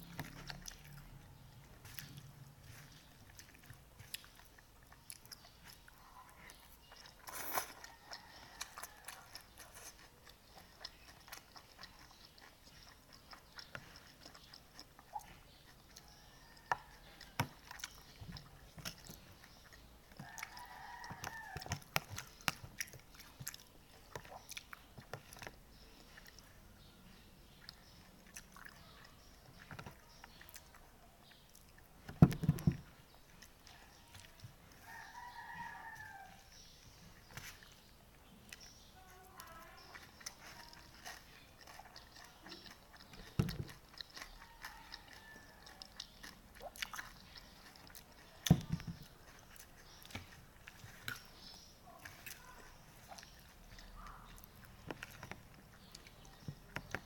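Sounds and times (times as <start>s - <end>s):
person chewing noodles: 0.0s - 57.0s
rooster crowing: 34.8s - 36.5s.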